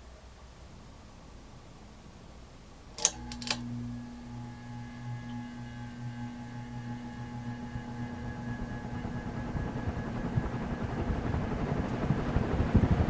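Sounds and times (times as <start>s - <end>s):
ceiling fan motor hum: 0.0s - 13.0s
switch clicks: 3.0s - 3.8s.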